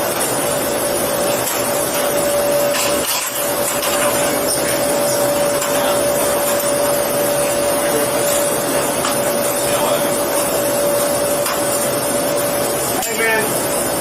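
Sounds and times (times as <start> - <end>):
machine hum: 0.0 - 14.0.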